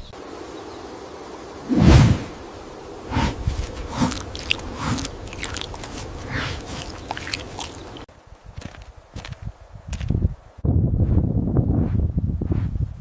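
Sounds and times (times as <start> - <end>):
animal chewing crunchy food: 3.4 - 9.3.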